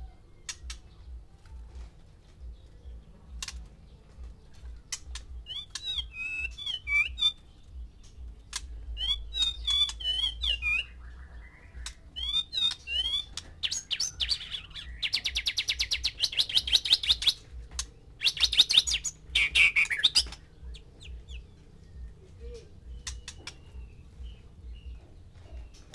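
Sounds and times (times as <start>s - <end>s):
bird singing whistled phrases: 5.4s - 7.6s, 8.9s - 17.4s, 18.2s - 25.0s.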